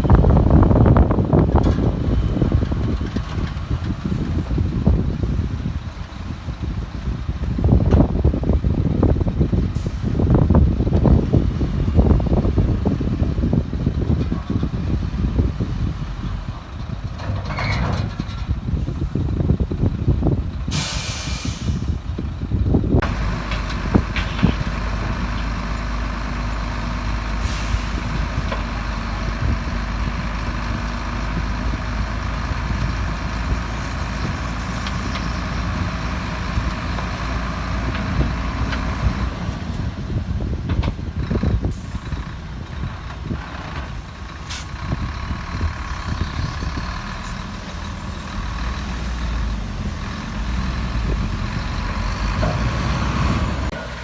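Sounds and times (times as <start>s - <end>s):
diesel truck engine droning: 0.0s - 54.0s
air brake hiss: 20.7s - 22.0s, 27.4s - 28.0s.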